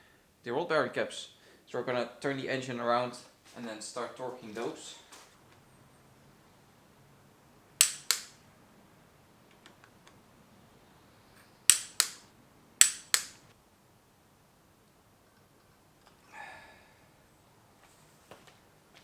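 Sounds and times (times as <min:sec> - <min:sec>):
torque wrench clicking: 0:07.8 - 0:08.4, 0:11.7 - 0:13.4.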